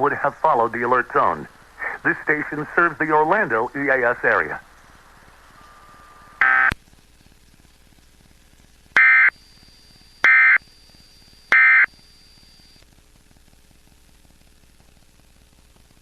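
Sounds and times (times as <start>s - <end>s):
buzzy digital data bursts: 0.5s - 6.7s.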